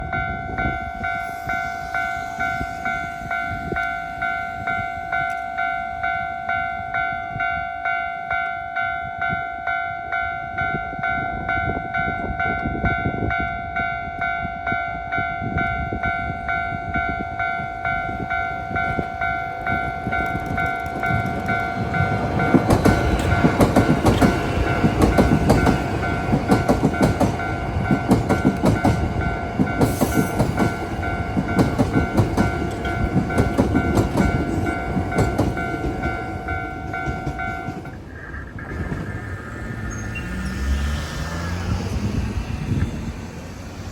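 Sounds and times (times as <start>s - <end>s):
level crossing warning bell: 0.0s - 38.1s
train wheels clattering over rail joints: 17.8s - 40.2s.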